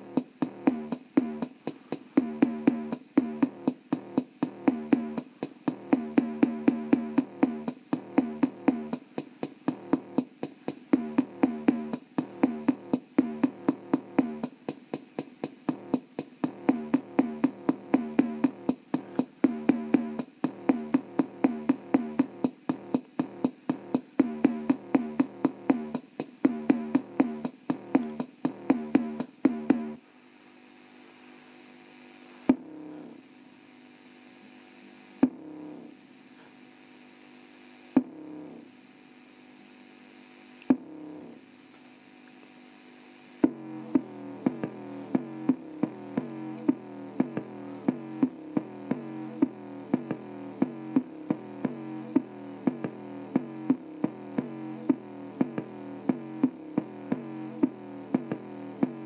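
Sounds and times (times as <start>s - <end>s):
electronic music with drum-machine beat: 0.0s - 30.0s, 38.0s - 38.4s, 40.7s - 41.4s, 43.4s - 59.0s
faint hum: 0.0s - 59.0s.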